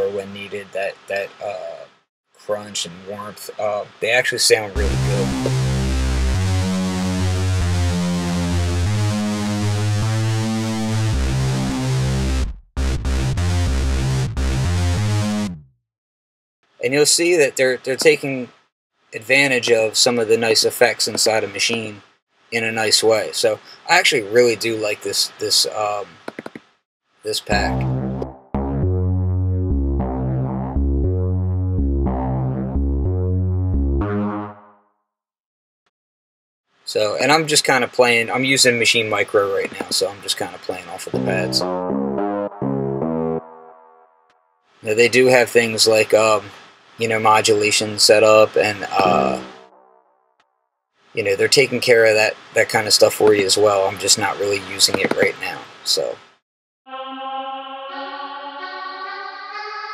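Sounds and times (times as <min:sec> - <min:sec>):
synth bass notes: 0:04.8 - 0:15.7, 0:27.5 - 0:34.8, 0:41.1 - 0:44.2, 0:48.8 - 0:50.0.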